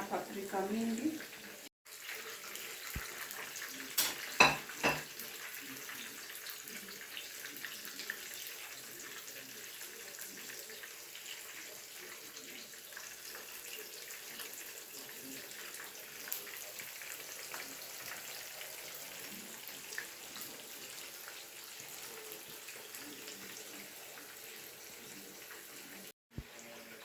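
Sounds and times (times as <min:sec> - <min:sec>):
hot oil sizzling: 0:00.0 - 0:27.0
oil crackles and pops: 0:01.9 - 0:04.4.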